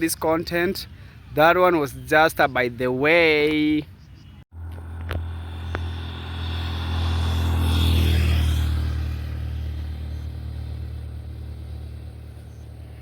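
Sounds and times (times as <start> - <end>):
low engine hum: 4.5 - 13.0
vehicle passing on road: 4.5 - 13.0.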